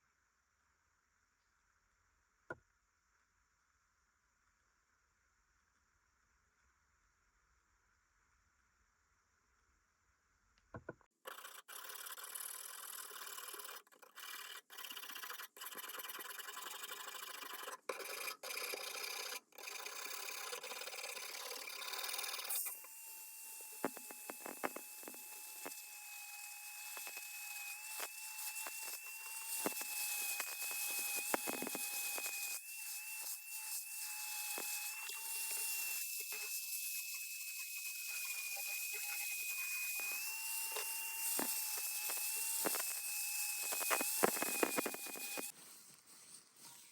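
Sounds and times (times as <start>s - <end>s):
rasping on a steel blade: 11.3s - 22.8s, 23.7s - 46.9s
small power tool whining: 11.3s - 46.9s.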